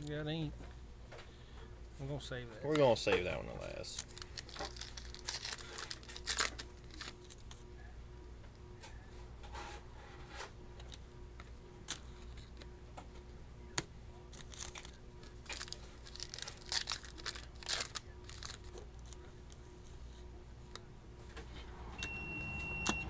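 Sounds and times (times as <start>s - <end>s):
steady low hum: 0.0s - 23.0s
cards clicking and rustling: 2.7s - 7.6s, 10.8s - 12.7s, 13.7s - 19.6s
foil packs tearing and crinkling: 3.6s - 7.4s, 14.3s - 19.2s.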